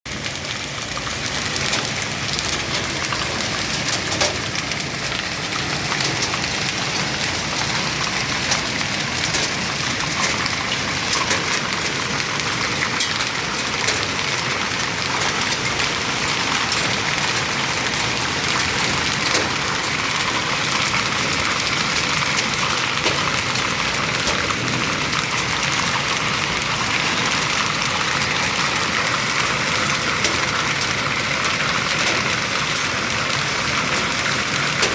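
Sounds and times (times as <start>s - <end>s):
hailstones striking surfaces: 0.1s - 34.9s.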